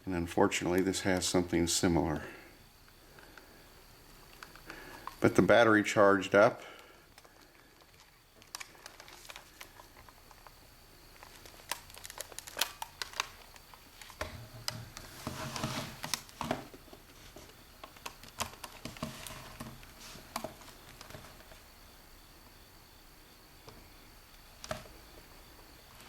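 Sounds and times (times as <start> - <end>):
rustling and fumbling: 7.1 - 21.8.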